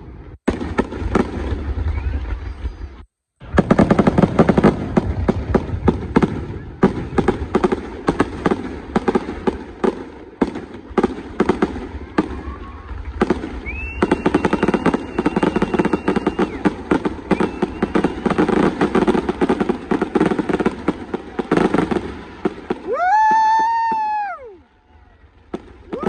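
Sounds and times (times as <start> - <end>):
fireworks bangs and crackles: 0.0 - 26.0
firework whistle: 0.5 - 3.1, 12.0 - 25.2, 25.8 - 26.0.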